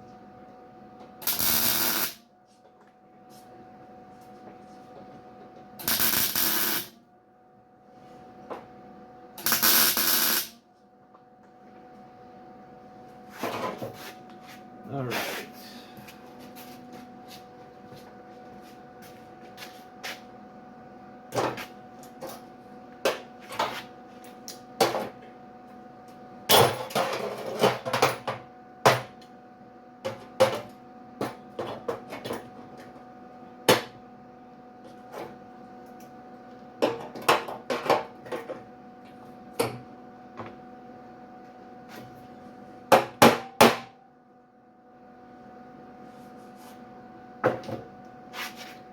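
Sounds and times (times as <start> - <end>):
steady hum: 0.0 - 48.9
welder crackling: 1.2 - 2.2, 5.8 - 6.9, 9.4 - 10.5.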